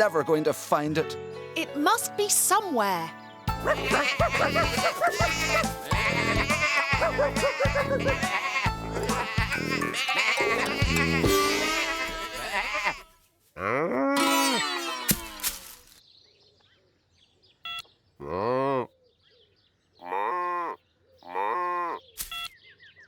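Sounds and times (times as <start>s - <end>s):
cartoon cow mooing: 3.6s - 15.4s, 18.2s - 18.9s, 20.0s - 22.0s.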